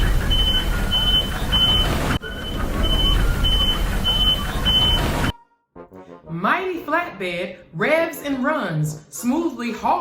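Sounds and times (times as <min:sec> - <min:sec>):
heavy truck engine rumbling: 0:00.0 - 0:05.3
short high electronic beeps: 0:00.3 - 0:05.5.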